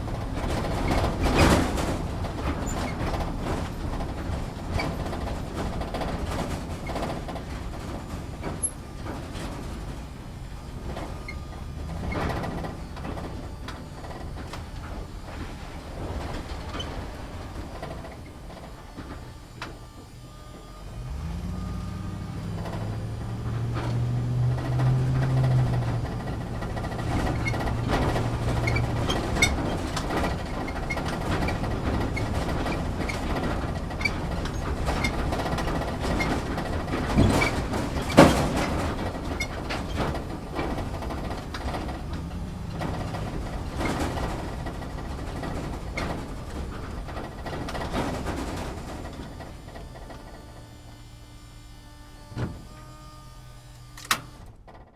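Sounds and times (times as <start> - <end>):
engine drone: 0.0 - 54.9
vehicle body rattling and creaking: 0.0 - 54.9
knocks from bumps: 10.6 - 50.7.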